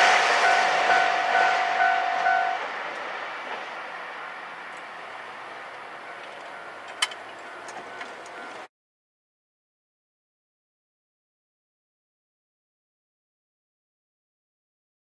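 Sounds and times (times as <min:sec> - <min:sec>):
level crossing warning bell: 0:00.0 - 0:08.7
train wheels on rails: 0:00.0 - 0:08.7.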